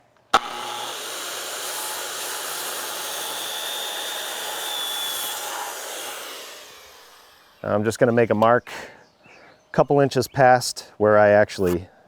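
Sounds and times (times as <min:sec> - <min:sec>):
power tool motor running: 0:00.3 - 0:07.6.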